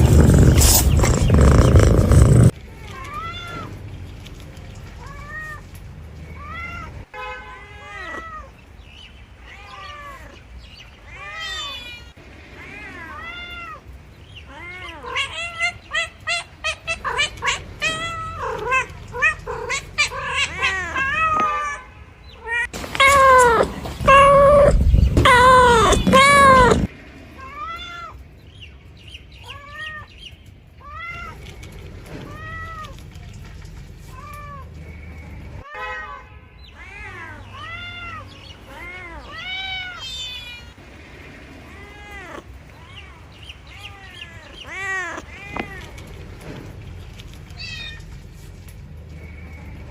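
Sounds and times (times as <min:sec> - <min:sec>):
cat meowing: 0:00.0 - 0:03.7, 0:06.3 - 0:08.6, 0:11.0 - 0:13.8, 0:14.4 - 0:21.8, 0:22.4 - 0:28.2, 0:36.7 - 0:40.8, 0:41.6 - 0:46.0, 0:47.5 - 0:48.1.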